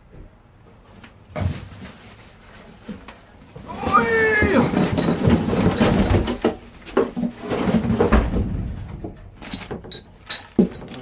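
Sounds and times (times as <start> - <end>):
packaging knocks and rustles: 1.4 - 11.0
heavy thud: 7.9 - 9.4.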